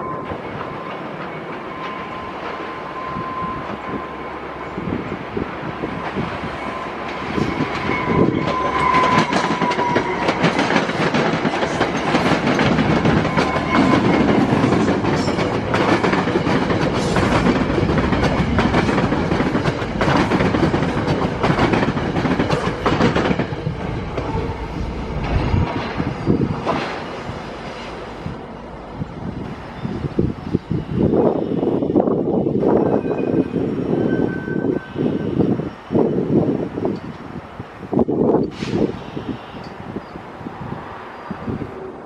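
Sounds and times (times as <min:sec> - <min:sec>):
train wheels clicking on rails: 0:00.2 - 0:03.0, 0:05.0 - 0:33.0.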